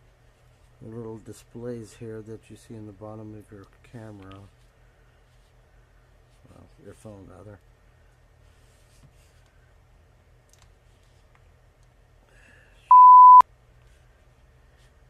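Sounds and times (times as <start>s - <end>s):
loud electronic beep: 12.9s - 13.4s.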